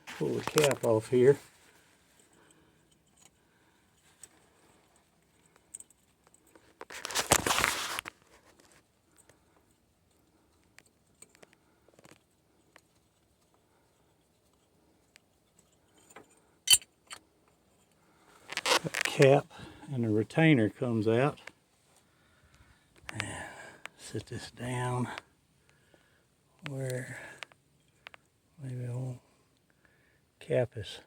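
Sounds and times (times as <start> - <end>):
tools clicking on metal: 16.0 - 17.2.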